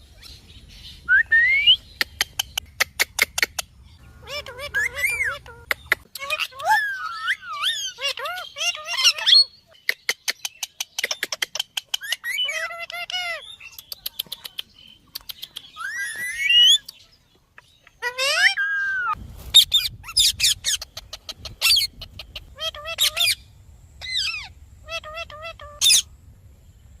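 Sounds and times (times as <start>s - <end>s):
parrot squawking and chattering: 1.9s - 17.0s, 17.6s - 26.1s.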